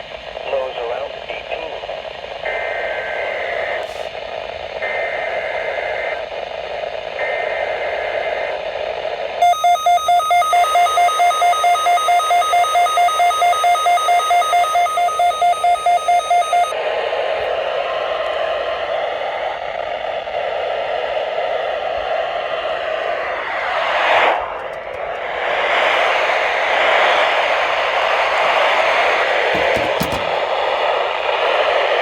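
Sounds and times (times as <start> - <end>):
rapid alarm beeping: 9.4 - 16.7, 29.5 - 30.5.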